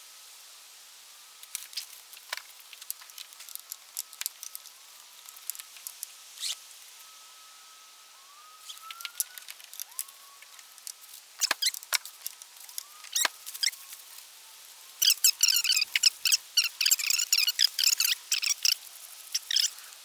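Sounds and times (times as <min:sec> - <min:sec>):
bird rising whistles: 0:06.4 - 0:10.5, 0:12.8 - 0:13.9
rapid bird chirping: 0:08.3 - 0:10.6, 0:12.6 - 0:14.0, 0:15.0 - 0:19.9.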